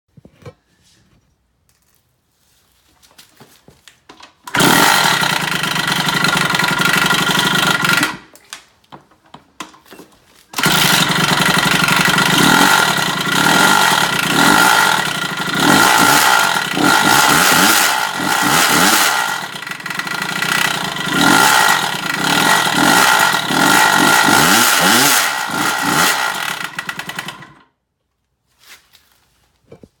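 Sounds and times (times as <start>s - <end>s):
dirt bike engine revving: 4.5s - 8.2s, 10.6s - 27.6s
engine knocking: 4.6s - 8.2s, 10.6s - 27.6s.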